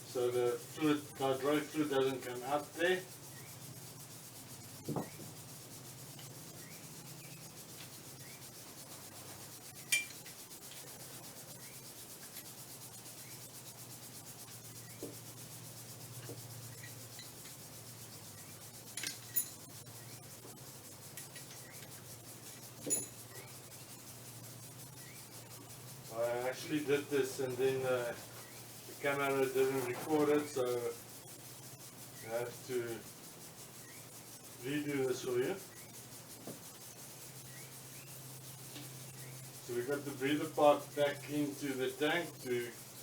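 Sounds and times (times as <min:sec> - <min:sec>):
parts knocking and clicking: 0:18.9 - 0:19.6.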